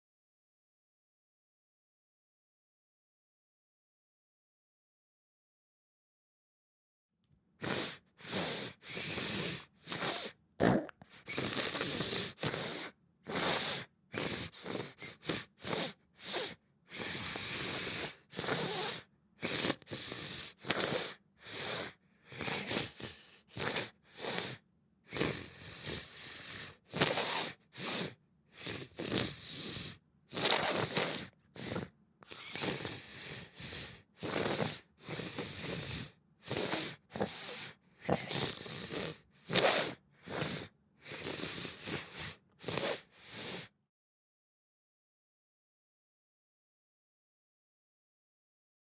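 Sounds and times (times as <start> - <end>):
person sniffing congested nose: 7.6 - 43.8.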